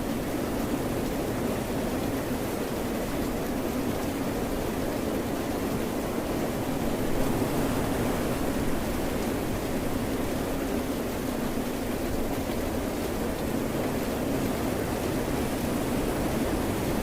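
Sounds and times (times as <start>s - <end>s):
rain: 0.0s - 17.0s
ocean waves: 5.9s - 17.0s.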